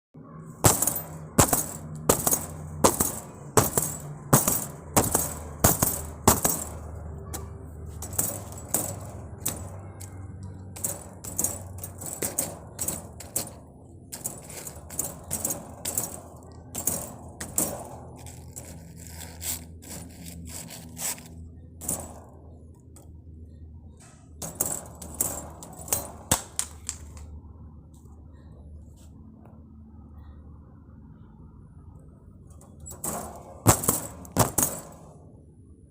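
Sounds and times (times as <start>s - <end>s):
sharp metallic clacks: 0.6s - 23.1s, 24.3s - 27.4s.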